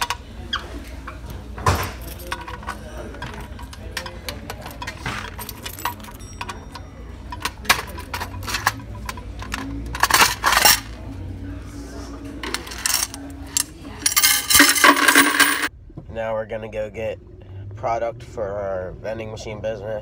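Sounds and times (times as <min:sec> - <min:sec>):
coins clinking: 0:01.9 - 0:11.0, 0:12.4 - 0:15.7
rush of jingling coins: 0:14.0 - 0:15.7.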